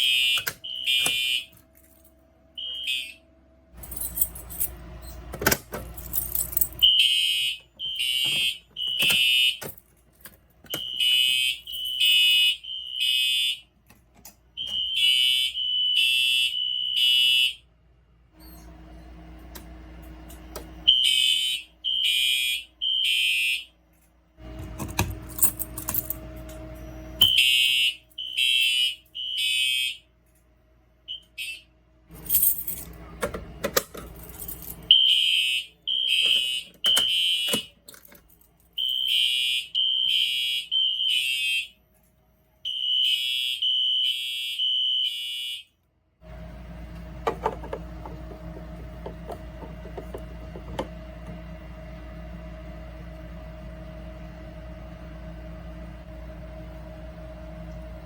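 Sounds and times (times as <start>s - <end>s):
fire alarm horn beeps: 0.0s - 1.6s, 2.5s - 3.4s, 6.7s - 9.8s, 10.7s - 13.7s, 14.6s - 17.7s, 20.5s - 23.8s, 25.4s - 30.1s, 31.0s - 31.8s, 34.9s - 37.8s, 38.8s - 41.8s, 42.6s - 45.8s
handling noise: 32.1s - 34.9s, 46.9s - 51.4s.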